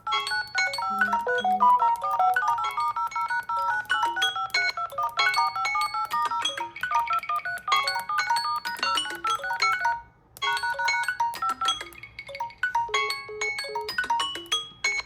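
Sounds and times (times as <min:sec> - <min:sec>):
smartphone chiming alert melody: 0:00.6 - 0:06.0.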